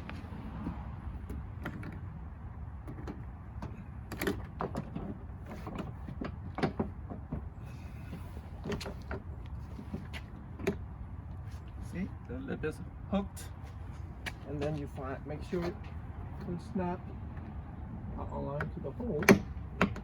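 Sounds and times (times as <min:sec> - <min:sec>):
plastic panel knocks and clacks: 0:02.8 - 0:07.5.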